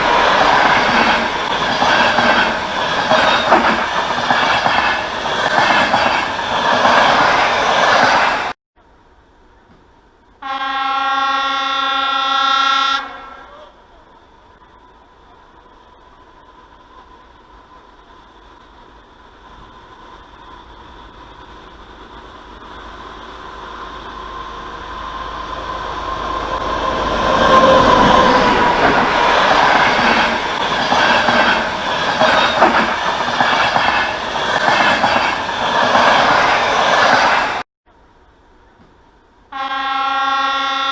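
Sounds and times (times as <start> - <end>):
train wheels clattering: 0.0 - 8.5, 26.6 - 37.6
train approaching: 0.0 - 40.9.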